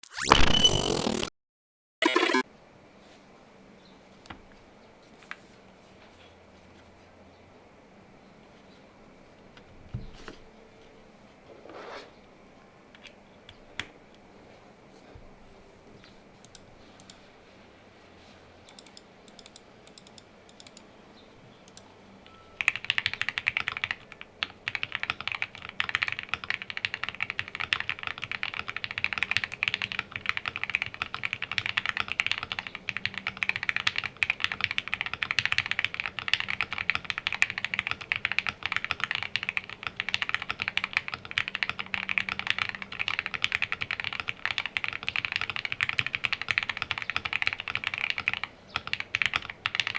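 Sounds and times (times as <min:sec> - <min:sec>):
mechanical keyboard typing: 0:18.7 - 0:20.8, 0:22.6 - 0:49.9.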